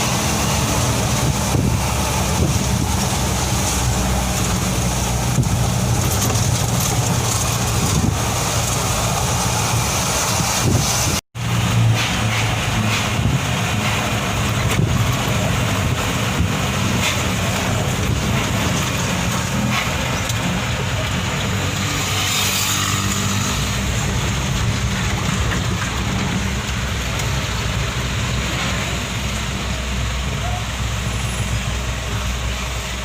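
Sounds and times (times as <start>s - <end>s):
diesel engine running: 0.0s - 33.0s.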